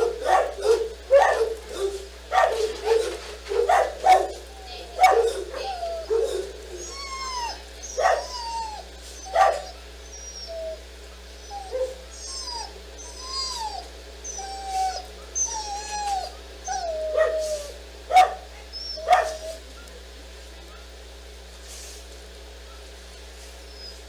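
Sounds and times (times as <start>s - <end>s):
dog barking: 0.0s - 6.9s, 7.9s - 8.4s, 9.3s - 9.8s, 11.7s - 12.0s, 17.1s - 17.5s, 18.1s - 19.6s
dog whining: 0.0s - 19.8s, 23.6s - 24.0s.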